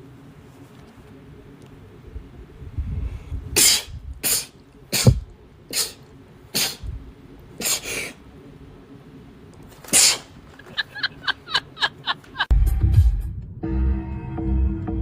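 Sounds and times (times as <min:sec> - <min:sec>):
woman sneezing: 0:03.6 - 0:06.0, 0:06.6 - 0:06.9, 0:09.9 - 0:10.3.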